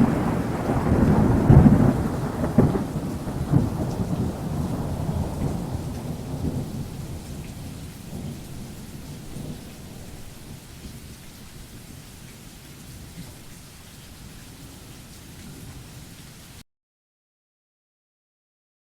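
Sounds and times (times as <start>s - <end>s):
thunder rumbling: 0.0s - 10.9s
rain falling: 0.0s - 16.6s.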